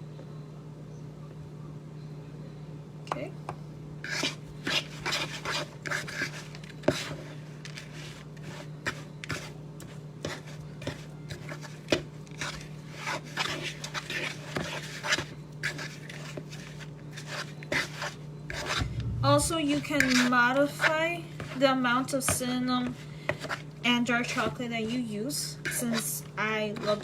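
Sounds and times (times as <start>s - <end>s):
fork scraping in a bowl: 4.0s - 18.9s, 25.6s - 27.0s.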